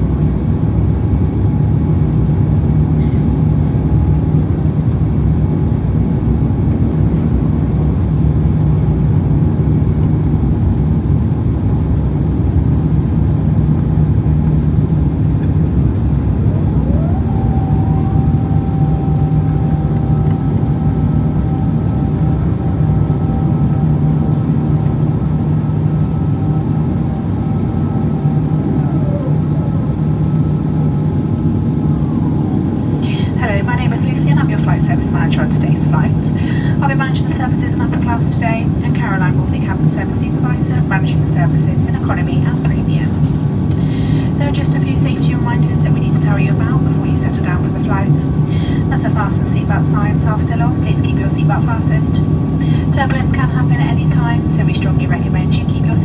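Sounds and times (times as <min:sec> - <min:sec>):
jet engine cabin roar: 0:00.0 - 0:56.0
low hum: 0:14.1 - 0:56.0
thin whine: 0:16.1 - 0:38.4.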